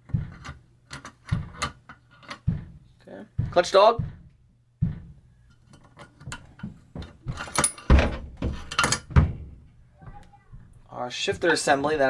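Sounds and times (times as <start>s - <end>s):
metal parts knocking on bench: 0.0s - 2.8s, 5.7s - 9.6s.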